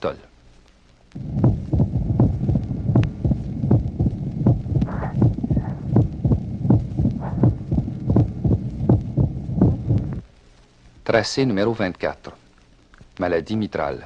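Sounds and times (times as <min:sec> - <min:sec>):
low-pitched heart rumble: 0:01.1 - 0:10.2
heartbeat: 0:01.1 - 0:10.3.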